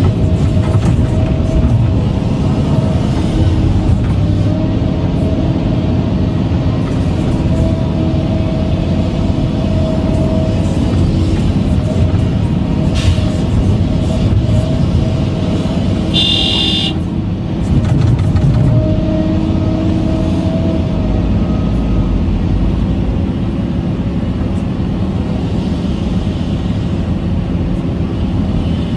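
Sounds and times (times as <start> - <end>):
short high-pitched beep: 16.2 - 17.0.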